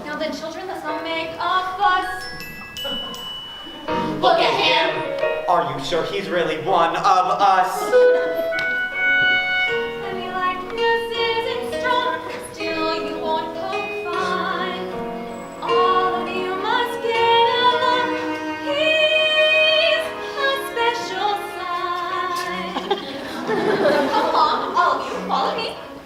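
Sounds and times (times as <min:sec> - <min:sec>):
musical accompaniment: 0:00.0 - 0:26.0
young cast singing a show tune: 0:04.0 - 0:08.0, 0:10.0 - 0:15.0, 0:15.6 - 0:25.6.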